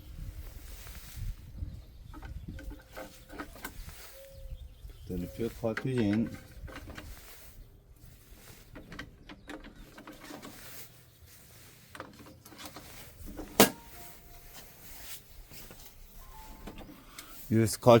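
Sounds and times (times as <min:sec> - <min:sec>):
short beeps: 0:13.8 - 0:14.6, 0:16.2 - 0:17.2.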